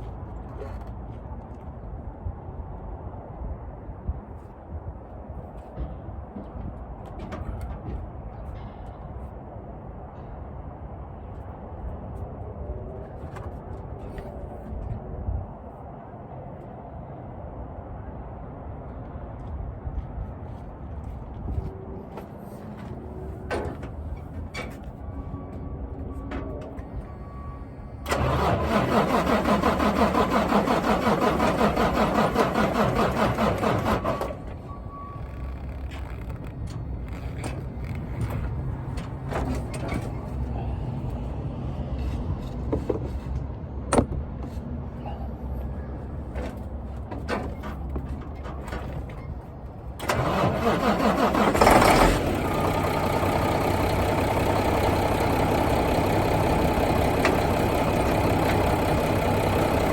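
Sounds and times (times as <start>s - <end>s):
diesel engine cranking: 26.4s - 41.2s, 46.1s - 59.9s
diesel engine idling: 26.5s - 35.6s, 50.0s - 59.9s.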